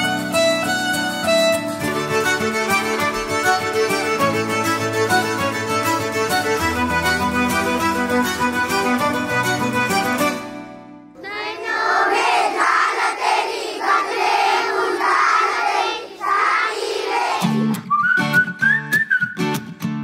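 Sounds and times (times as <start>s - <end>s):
instrumental background music: 0.0s - 11.1s
music with guitar and bass: 0.0s - 11.1s, 17.5s - 20.0s
children singing together: 11.2s - 17.7s.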